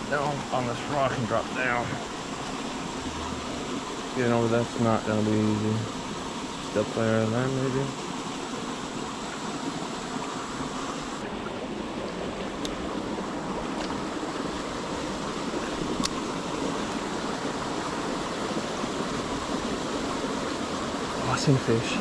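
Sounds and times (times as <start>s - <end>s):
creek water rushing: 0.0s - 22.0s
light clicks: 15.9s - 16.2s.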